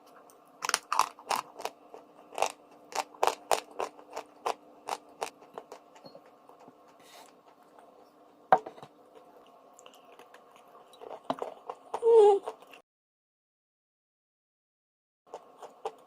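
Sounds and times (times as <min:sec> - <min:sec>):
chewing crunchy chalk: 0:00.6 - 0:08.0, 0:15.3 - 0:16.0.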